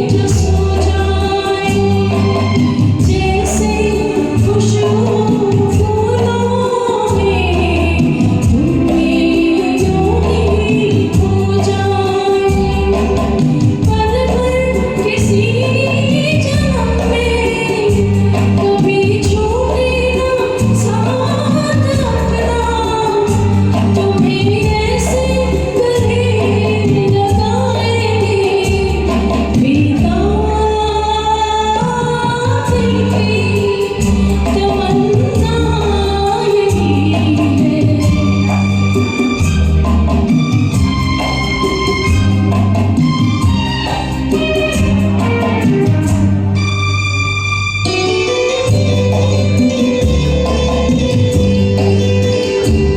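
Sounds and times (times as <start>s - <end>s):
woman singing: 0.0s - 41.0s
karaoke backing track: 0.0s - 52.9s.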